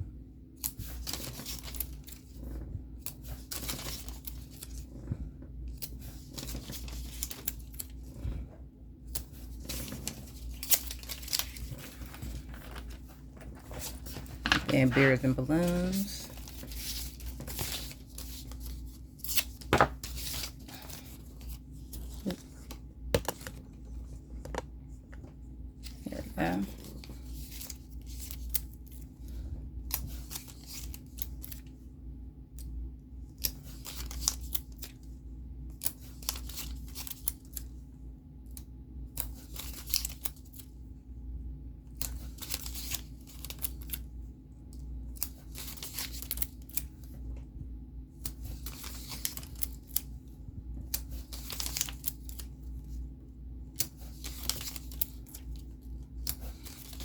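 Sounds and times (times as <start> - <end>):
steady low hum: 0.0 - 57.0
paper rustling and snipping: 0.6 - 5.0, 5.7 - 8.4, 9.1 - 23.7, 25.8 - 31.7, 33.4 - 35.1, 35.7 - 37.8, 38.5 - 40.8, 41.9 - 44.1, 45.1 - 47.2, 48.2 - 50.2, 50.8 - 53.0, 53.7 - 57.0.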